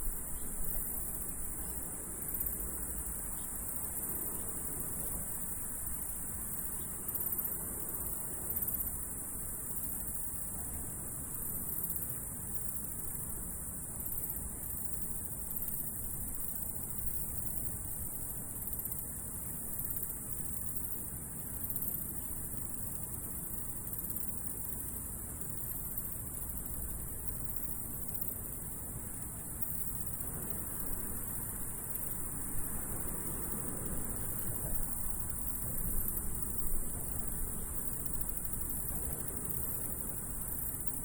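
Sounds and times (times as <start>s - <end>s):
low steady background noise: 0.0s - 41.0s.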